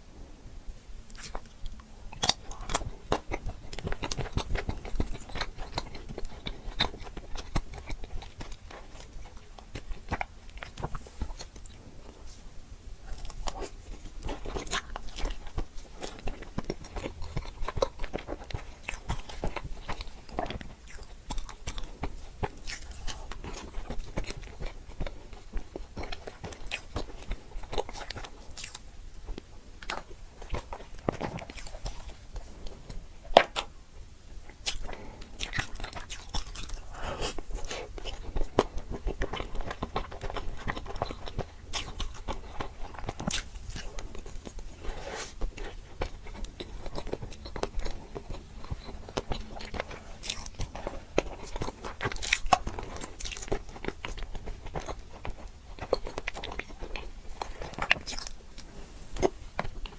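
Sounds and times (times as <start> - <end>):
person chewing: 1.0 - 59.9
food crunch: 1.1 - 12.4, 13.0 - 33.7, 34.4 - 59.9.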